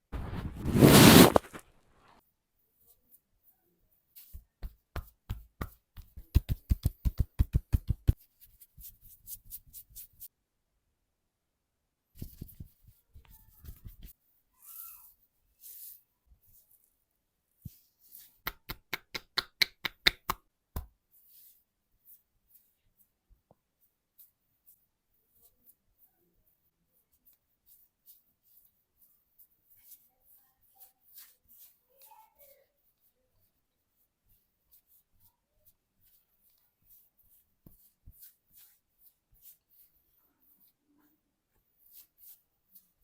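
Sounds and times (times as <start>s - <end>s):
hands rubbing in massage: 0.2s - 1.6s, 12.2s - 14.2s, 36.0s - 40.8s.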